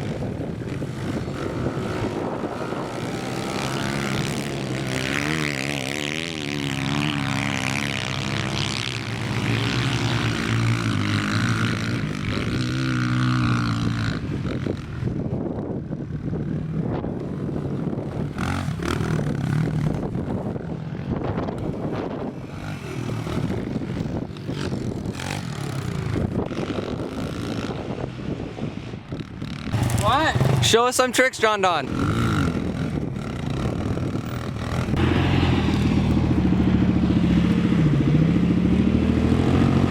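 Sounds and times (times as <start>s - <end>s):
small motorbike engines revving: 0.0s - 15.2s, 16.2s - 39.9s
rough rushing noise: 29.4s - 39.9s.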